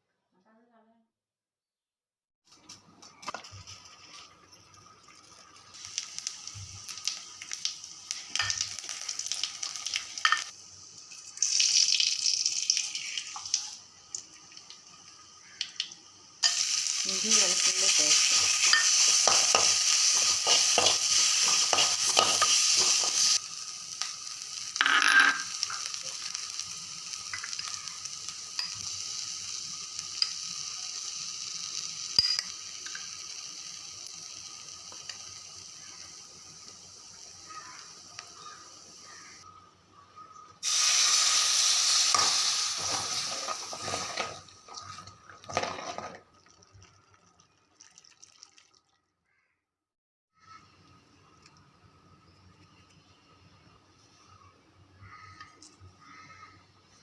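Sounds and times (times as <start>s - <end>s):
food sizzling in hot oil: 3.3s - 39.4s, 40.6s - 46.8s.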